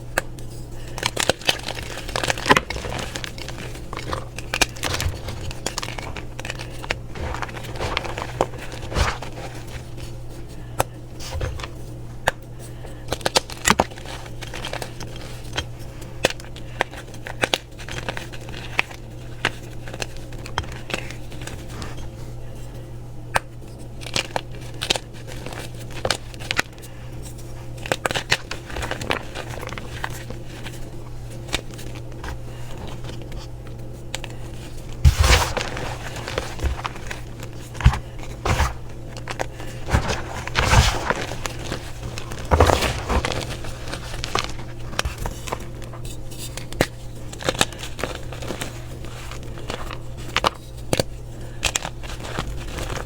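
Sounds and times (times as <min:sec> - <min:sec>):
crunchy slime crackling: 0:01.1 - 0:10.4, 0:34.5 - 0:45.8.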